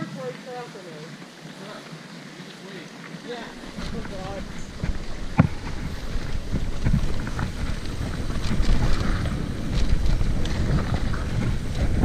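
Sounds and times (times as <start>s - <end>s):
bike tyre noise: 0.0s - 12.0s
wind buffeting microphone: 3.5s - 12.0s
bike clicks and rattles: 3.6s - 12.0s.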